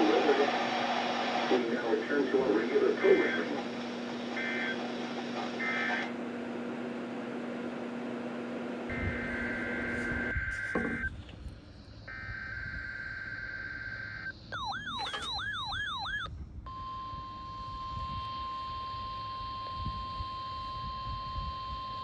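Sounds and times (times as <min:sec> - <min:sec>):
buzzy two-tone data squawks: 0:04.3 - 0:04.8, 0:08.9 - 0:22.0
wavering siren-like alert tone: 0:08.9 - 0:22.0.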